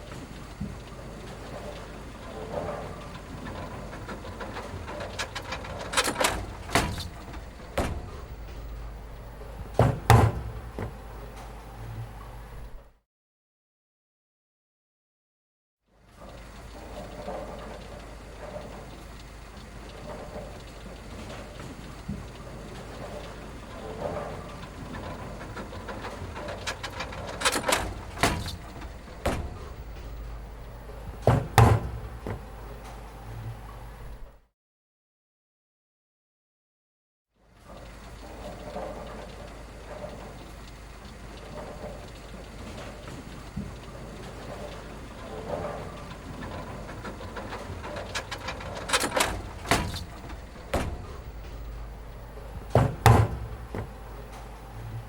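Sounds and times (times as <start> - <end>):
steady low hum: 3.8 - 12.9, 25.3 - 34.3, 43.7 - 55.0
sharp knocks and thuds: 5.4 - 11.2, 26.9 - 32.6, 48.4 - 54.4.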